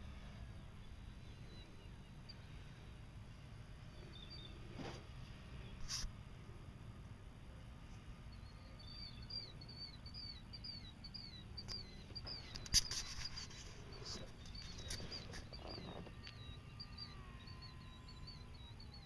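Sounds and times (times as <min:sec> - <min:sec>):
bird chirping: 0:00.5 - 0:02.9, 0:03.9 - 0:04.7, 0:08.3 - 0:19.0.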